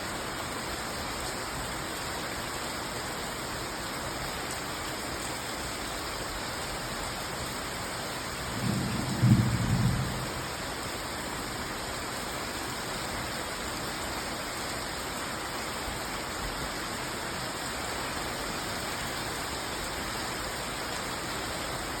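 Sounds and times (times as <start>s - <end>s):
heavy rain falling: 0.0s - 22.0s
low rumble of thunder: 8.4s - 10.7s.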